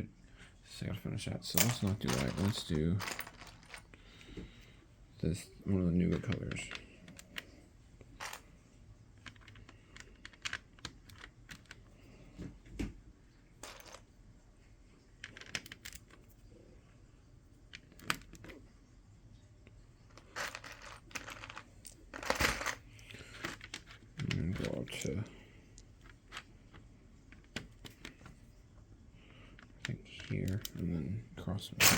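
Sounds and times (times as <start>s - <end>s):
plastic pieces rattling: 1.6s - 3.9s, 8.2s - 8.4s, 13.6s - 14.0s, 20.2s - 25.2s
plastic bricks clicking: 9.2s - 11.8s, 13.6s - 14.0s, 20.2s - 25.1s.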